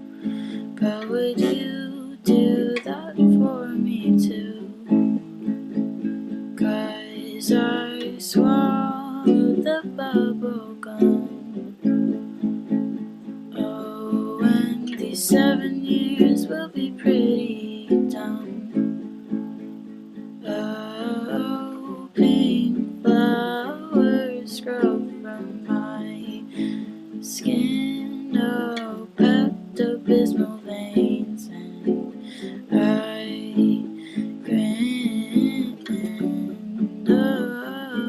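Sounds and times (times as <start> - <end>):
person singing: 0.0 - 5.8, 6.6 - 12.5, 13.2 - 19.4, 20.4 - 38.0
plucked acoustic strings: 0.0 - 38.0.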